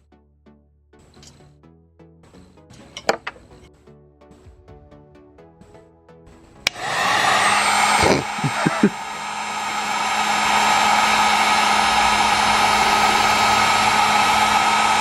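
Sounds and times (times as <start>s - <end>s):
heat gun switch click: 6.7s - 7.0s
heat gun whirring: 6.7s - 15.0s.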